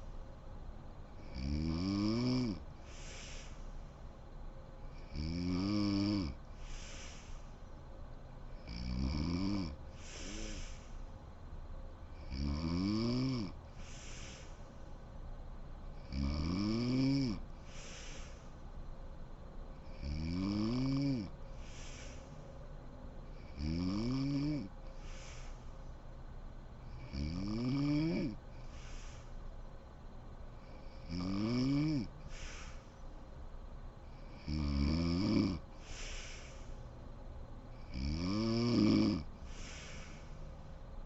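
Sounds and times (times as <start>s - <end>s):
woman snoring: 1.2s - 3.6s, 4.9s - 7.4s, 8.6s - 11.0s, 12.1s - 14.6s, 16.0s - 18.5s, 19.8s - 22.2s, 23.3s - 25.6s, 26.9s - 29.2s, 30.6s - 32.9s, 34.1s - 36.8s, 37.7s - 40.4s
hissy breath out: 2.8s - 4.1s, 6.5s - 7.8s, 9.9s - 11.2s, 13.7s - 15.1s, 17.6s - 18.8s, 21.4s - 22.7s, 24.8s - 26.0s, 28.5s - 29.6s, 32.2s - 33.3s, 35.7s - 37.0s, 39.3s - 40.8s.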